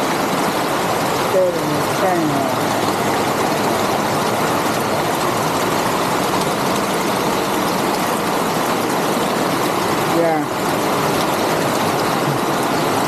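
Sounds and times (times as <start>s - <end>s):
heavy rain pouring: 0.0s - 13.0s.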